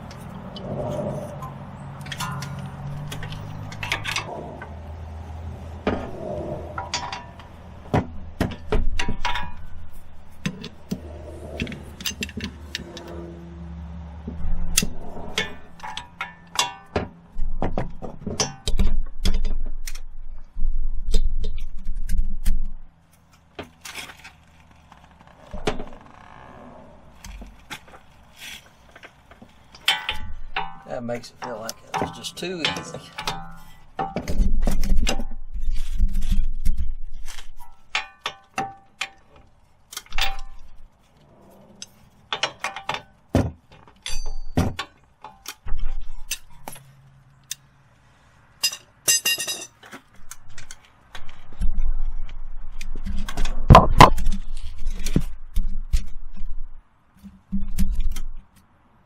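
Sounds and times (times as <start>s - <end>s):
metal hand tools clinking: 48.6s - 49.8s.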